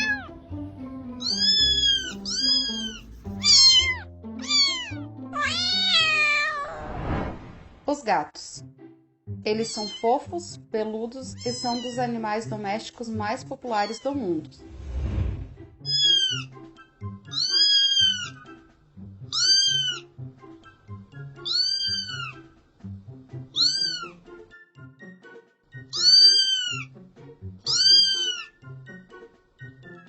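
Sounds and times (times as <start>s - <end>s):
cat meowing: 0.0s - 0.4s, 1.2s - 6.9s, 9.7s - 10.1s, 11.3s - 12.0s, 15.8s - 16.6s, 17.3s - 18.4s, 19.3s - 20.1s, 21.4s - 22.4s, 23.6s - 24.2s, 25.9s - 26.9s, 27.7s - 28.6s
background music with steady beat: 0.0s - 5.7s, 15.6s - 30.0s.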